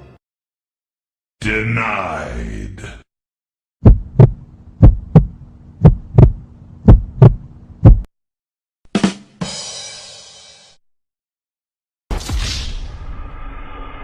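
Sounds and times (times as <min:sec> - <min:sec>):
heartbeat thumps: 0:03.8 - 0:08.1
low hum: 0:03.8 - 0:08.1.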